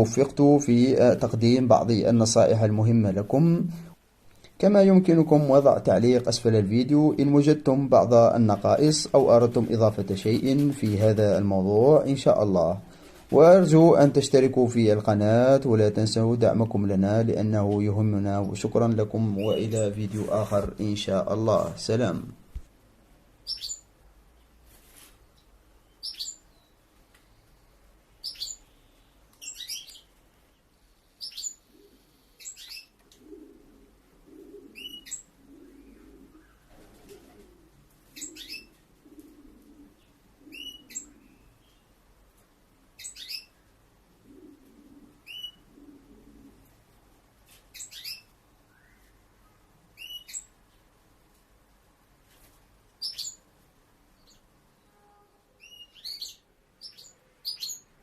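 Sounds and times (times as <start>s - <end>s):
finches chirping: 19.3s - 20.0s, 23.4s - 23.9s, 25.9s - 26.8s, 28.2s - 30.1s, 31.2s - 33.6s, 34.3s - 36.6s, 38.2s - 38.7s, 40.4s - 41.9s, 43.0s - 43.6s, 45.2s - 45.7s, 47.8s - 49.0s, 50.0s - 50.5s, 53.0s - 53.4s, 55.6s - 57.9s.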